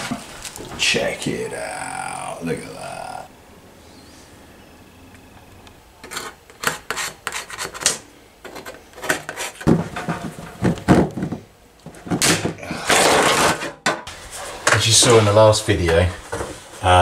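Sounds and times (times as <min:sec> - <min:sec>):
objects knocking and clattering: 0:07.7 - 0:15.0.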